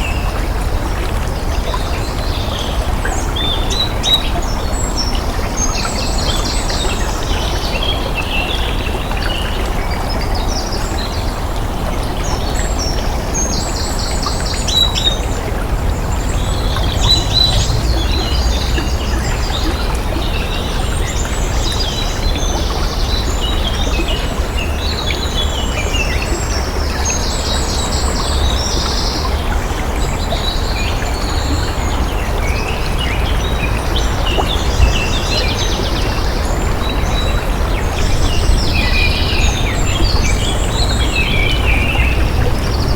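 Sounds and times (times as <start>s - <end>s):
flowing water: 0.0s - 42.9s
songbirds chirping: 0.0s - 42.9s.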